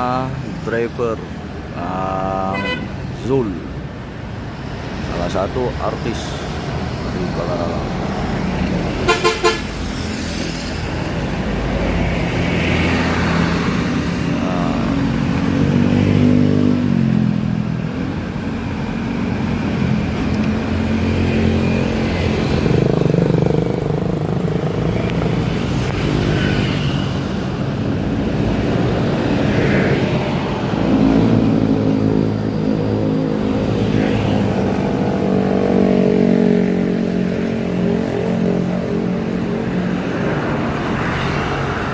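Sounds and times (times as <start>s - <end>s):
horn toots: 2.5s - 3.0s, 9.0s - 9.7s.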